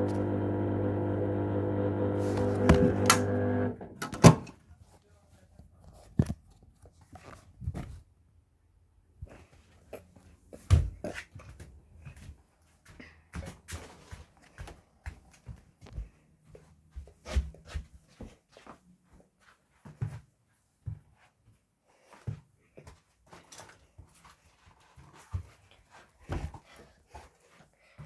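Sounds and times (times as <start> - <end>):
washing machine low hum: 0.0 - 4.5
washing machine knocking and thudding: 1.2 - 4.5.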